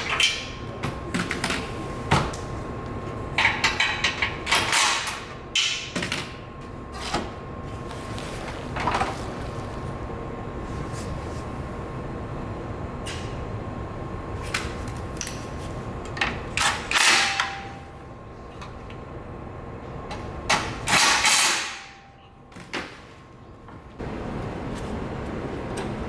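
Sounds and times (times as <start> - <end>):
steady hum: 0.0 - 26.0.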